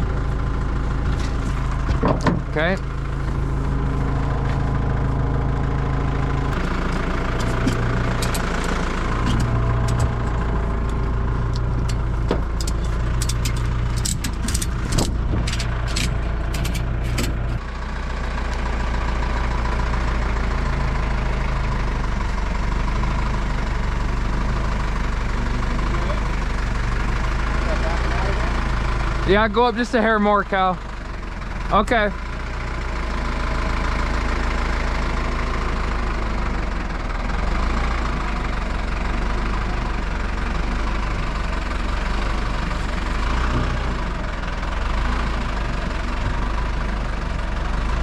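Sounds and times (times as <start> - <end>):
engine idling: 0.0 - 48.0.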